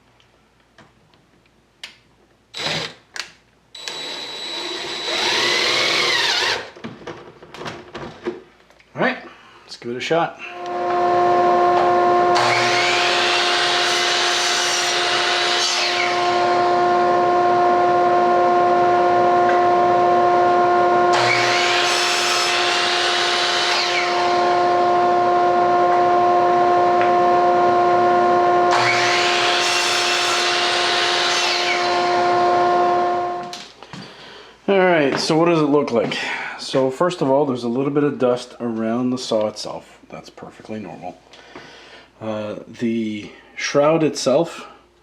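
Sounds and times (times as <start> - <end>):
miter saw cutting wood: 3.8 - 6.8, 10.5 - 33.6
dust collector humming: 10.6 - 33.6.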